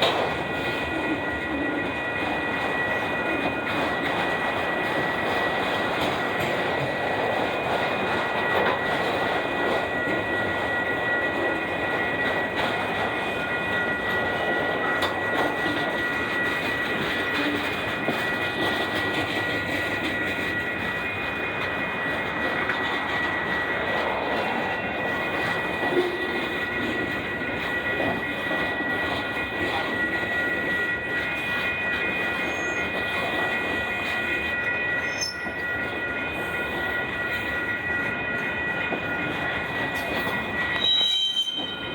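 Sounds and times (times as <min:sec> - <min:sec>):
high-pitched ring: 0:00.0 - 0:41.9
train wheels on rail: 0:00.0 - 0:41.9.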